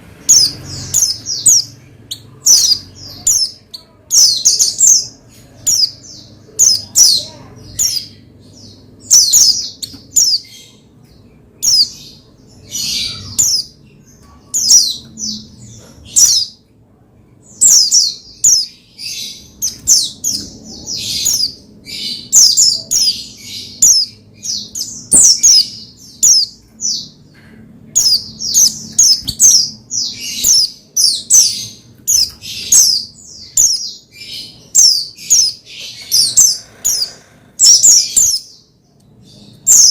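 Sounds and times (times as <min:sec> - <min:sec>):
bird twittering: 0:17.6 - 0:38.6.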